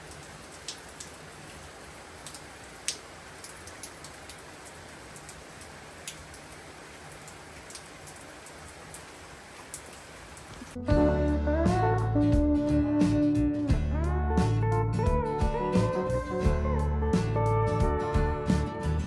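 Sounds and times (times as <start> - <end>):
raindrops tapping a surface: 0.0 - 10.8
rain falling: 0.0 - 19.0.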